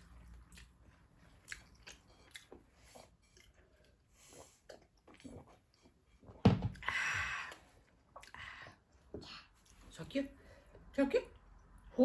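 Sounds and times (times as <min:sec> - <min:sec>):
chewing: 0:00.0 - 0:06.0.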